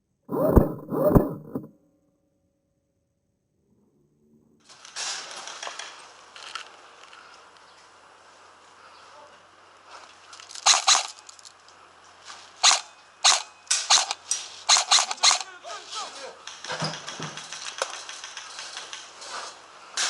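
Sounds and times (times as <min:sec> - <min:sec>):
airsoft gun shots: 0:12.6 - 0:15.5.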